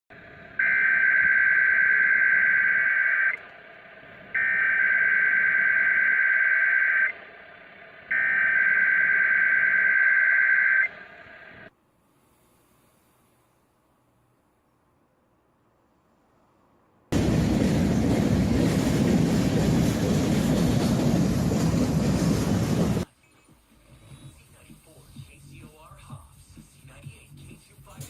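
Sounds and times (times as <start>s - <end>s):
radio hiss: 23.1s - 28.0s.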